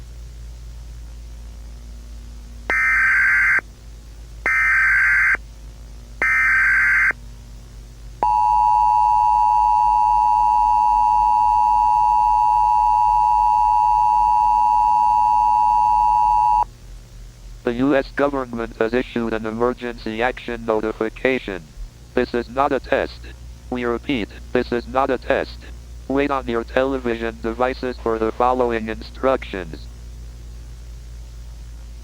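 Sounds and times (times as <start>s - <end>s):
low hum and hiss: 0.0s - 32.0s
two-tone attention signal: 2.7s - 3.6s, 4.5s - 5.4s, 6.2s - 7.1s
warbling data bursts: 2.7s - 3.6s, 4.5s - 5.4s, 6.2s - 7.2s.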